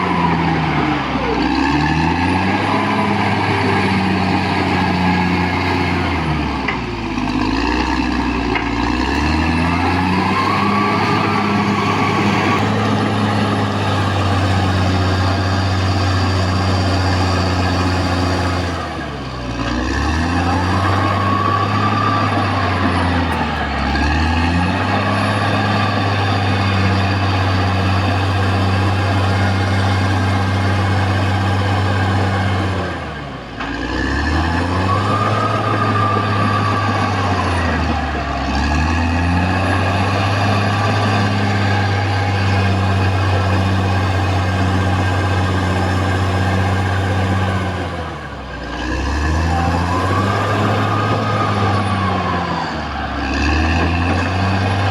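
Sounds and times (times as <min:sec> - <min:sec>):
bulldozer diesel engine running: 0:00.0 - 0:54.9.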